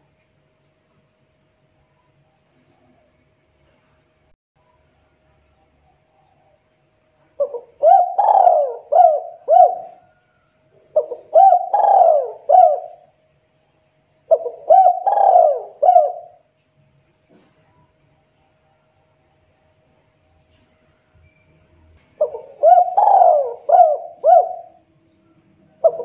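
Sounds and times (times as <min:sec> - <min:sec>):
dove cooing: 0:07.4 - 0:13.2, 0:14.3 - 0:16.4, 0:22.2 - 0:24.9, 0:25.7 - 0:26.0.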